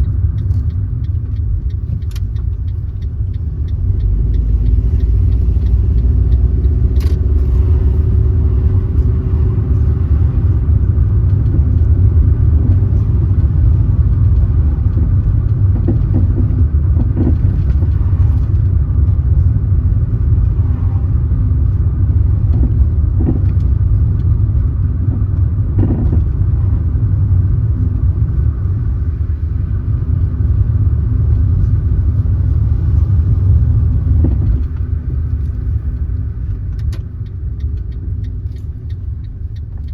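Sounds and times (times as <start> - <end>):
car engine and tyres rumbling: 0.0 - 39.9.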